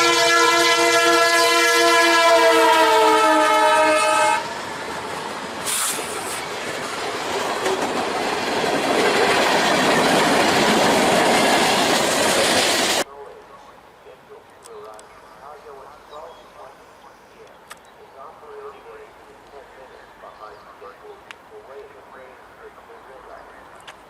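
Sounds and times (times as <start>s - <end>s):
locomotive air horn: 0.0s - 4.5s
train wheels clattering on rails: 5.4s - 13.0s.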